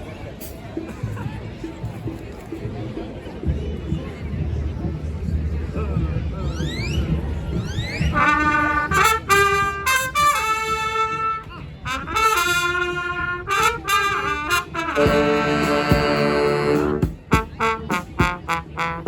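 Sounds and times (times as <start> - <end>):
brass band playing: 6.5 - 19.0.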